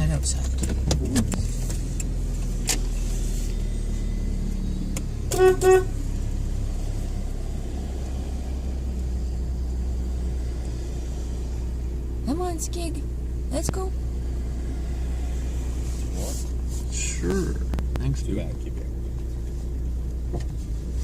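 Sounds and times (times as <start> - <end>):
car idling hum: 0.0 - 21.0
car horn beeps: 3.6 - 6.2.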